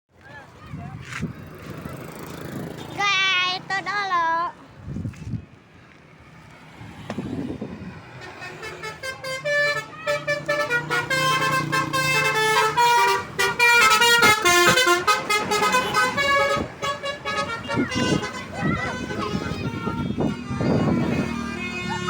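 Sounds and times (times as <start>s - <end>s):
bus engine rumble: 0.1s - 22.0s
multi-tone air horns playing a tune: 8.2s - 22.0s.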